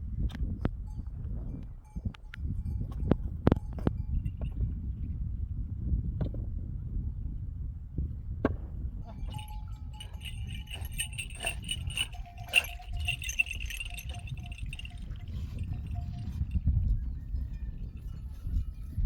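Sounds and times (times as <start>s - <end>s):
metal livestock bells clinking: 1.7s - 4.8s, 9.0s - 19.0s.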